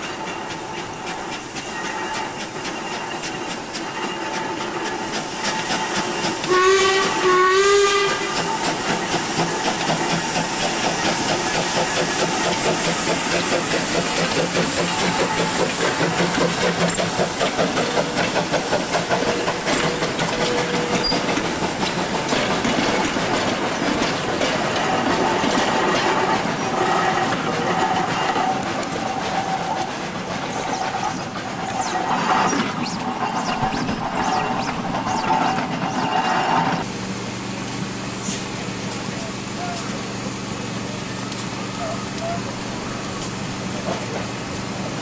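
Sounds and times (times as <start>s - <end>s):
hiss of steam: 0.0s - 22.6s, 28.9s - 36.9s
locomotive exhaust and wheels beat: 0.0s - 45.0s
steam locomotive whistle: 4.4s - 9.0s.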